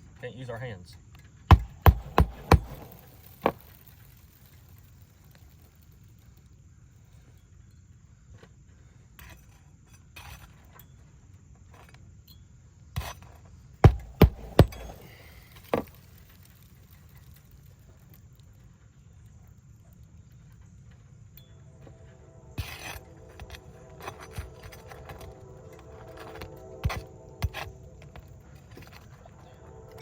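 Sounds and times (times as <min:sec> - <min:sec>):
metal bar knocking on nails: 0:13.8 - 0:15.0.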